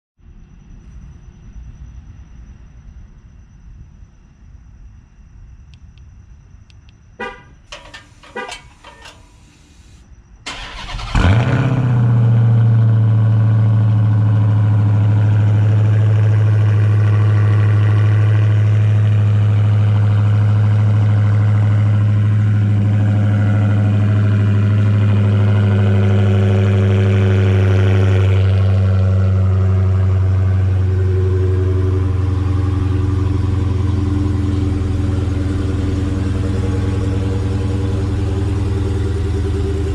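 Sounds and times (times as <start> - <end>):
loud engine idling: 7.2 - 11.4, 14.5 - 39.9
starter motor cranking: 7.7 - 11.2.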